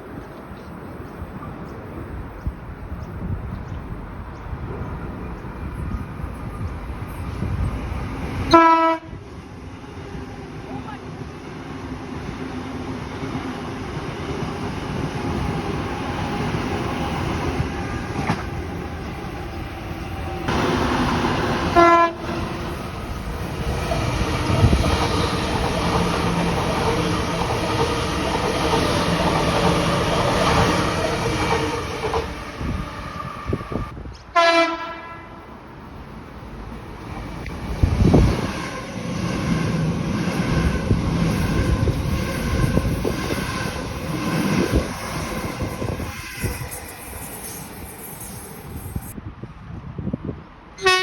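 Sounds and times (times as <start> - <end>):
train running on rails: 0.0 - 51.0
train horn blasts: 8.5 - 9.2, 21.7 - 22.4, 32.6 - 35.5, 50.8 - 51.0.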